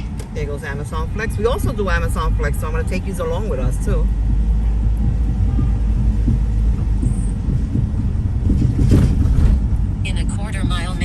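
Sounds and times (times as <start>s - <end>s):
car road rumble from inside: 0.0s - 11.0s.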